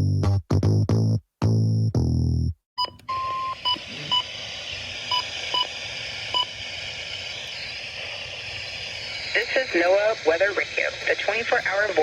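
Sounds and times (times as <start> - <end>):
short beeps: 2.8 - 4.3, 5.1 - 5.7, 6.3 - 6.5
electronic tone: 2.8 - 4.4, 5.1 - 5.7, 6.3 - 6.6
radio static hiss: 3.8 - 12.0.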